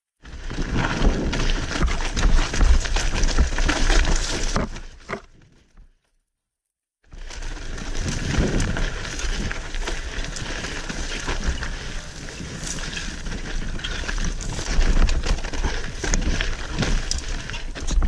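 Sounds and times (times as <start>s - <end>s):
tyres rolling over dirt and rocks: 0.2s - 5.6s, 7.1s - 18.0s
wind noise: 7.6s - 18.0s.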